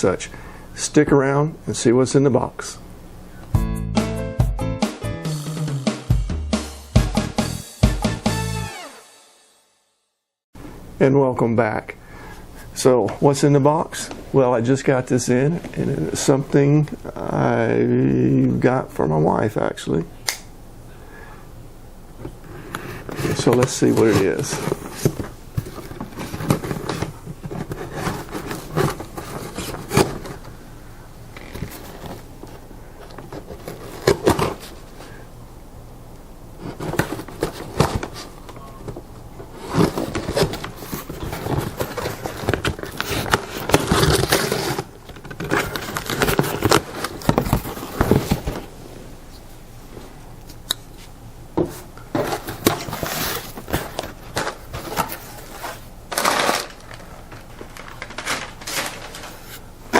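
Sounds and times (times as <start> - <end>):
cardboard scraping and rustling: 22.7 - 30.6, 31.4 - 35.2, 36.6 - 50.2, 51.0 - 59.9.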